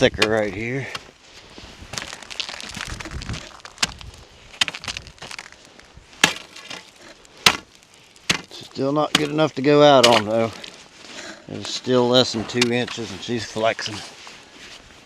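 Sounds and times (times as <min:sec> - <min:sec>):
ice scraping: 0:00.3 - 0:15.0
ice cracking under chopping: 0:01.9 - 0:10.8.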